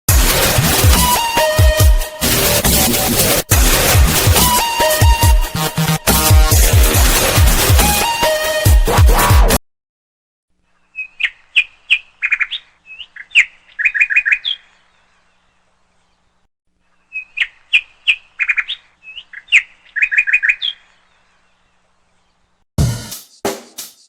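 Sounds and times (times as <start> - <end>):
bird chirping and trilling: 10.8 - 15.1, 16.9 - 21.8.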